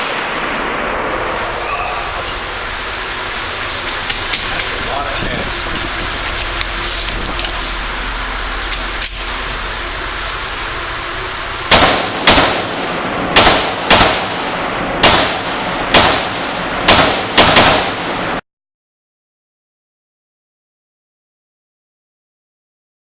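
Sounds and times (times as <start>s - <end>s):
gunshots echoing indoors: 0.0s - 3.2s, 11.5s - 18.4s
steady background noise: 0.0s - 18.4s.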